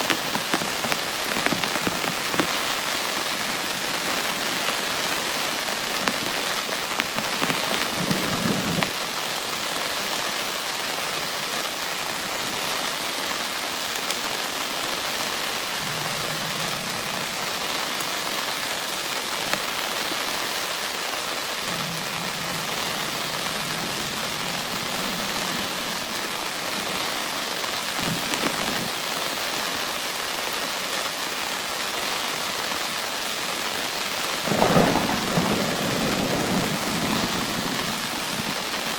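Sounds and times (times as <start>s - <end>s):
heavy rain falling: 0.0s - 38.9s
faint low rumbles: 15.7s - 18.1s.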